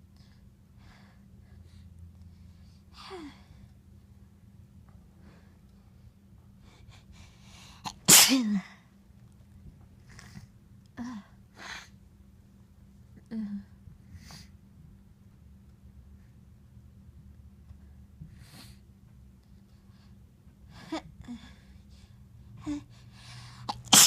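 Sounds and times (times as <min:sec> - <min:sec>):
person sneezing: 0:07.9 - 0:08.6, 0:23.7 - 0:24.0.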